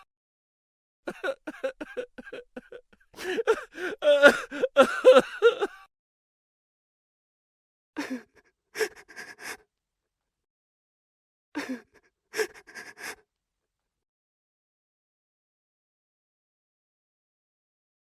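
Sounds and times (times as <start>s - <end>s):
person sobbing: 1.1s - 5.9s, 8.0s - 9.6s, 11.6s - 13.2s.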